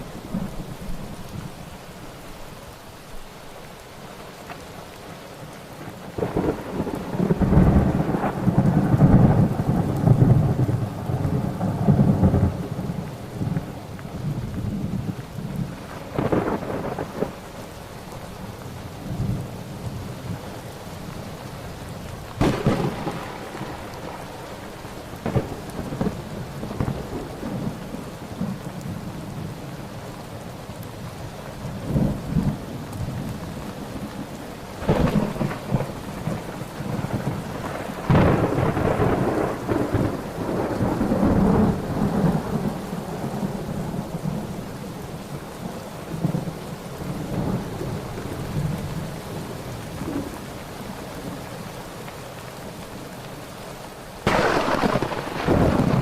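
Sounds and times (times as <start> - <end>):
steady rain: 0.0 - 56.0
thunder rolling: 6.2 - 13.6, 15.6 - 17.4, 22.4 - 28.6, 34.8 - 44.4, 54.2 - 56.0
sharp thunder clap: 22.4 - 24.1, 34.8 - 36.0, 54.3 - 56.0.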